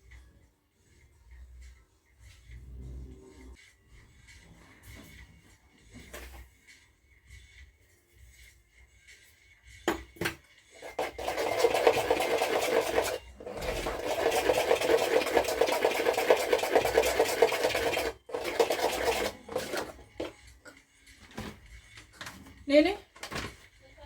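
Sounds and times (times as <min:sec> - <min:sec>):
batter beaten in a bowl: 0:10.8 - 0:20.4.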